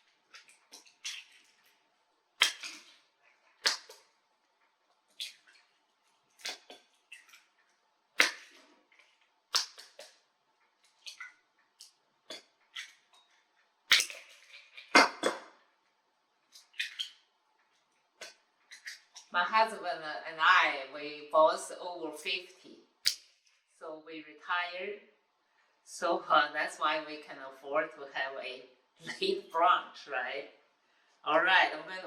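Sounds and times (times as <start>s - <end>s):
eggshell rustling: 0.0s - 14.9s.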